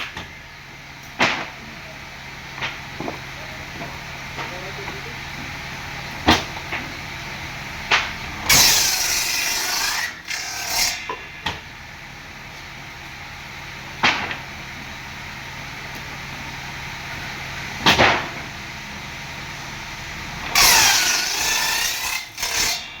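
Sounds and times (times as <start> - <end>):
power tool cutting wood: 8.5 - 11.2, 20.5 - 23.0.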